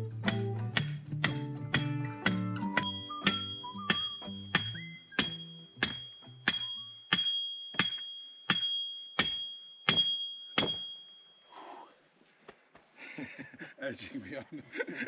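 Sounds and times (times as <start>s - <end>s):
background music: 0.0s - 6.0s
hammer blows on metal: 1.7s - 10.9s.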